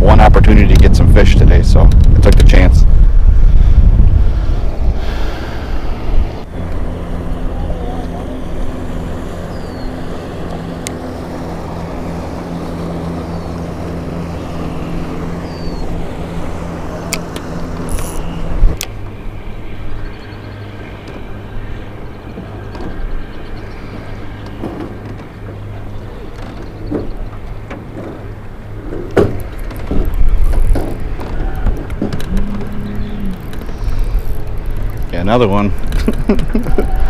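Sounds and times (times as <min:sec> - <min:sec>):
motorboat engine running: 0:00.0 - 0:37.0.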